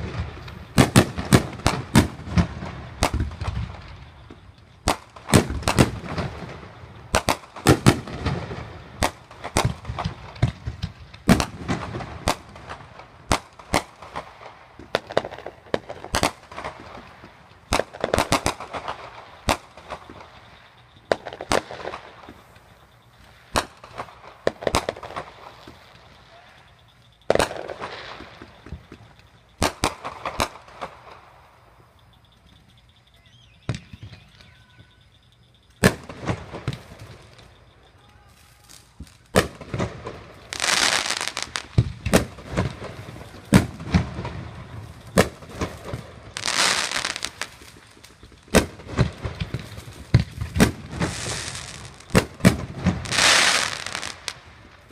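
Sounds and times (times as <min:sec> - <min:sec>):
fireworks banging and crackling: 0:00.0 - 0:54.9.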